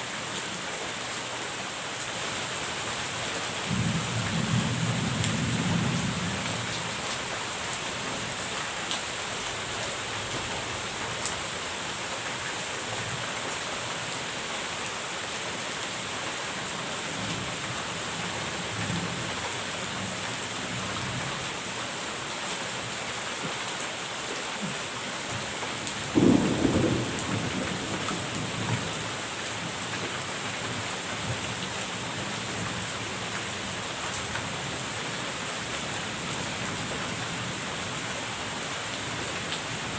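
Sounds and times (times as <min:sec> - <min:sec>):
heavy rain: 0:00.0 - 0:39.9
distant rolling thunder: 0:03.7 - 0:06.8, 0:26.1 - 0:29.5
loud thunderclap: 0:26.2 - 0:29.1.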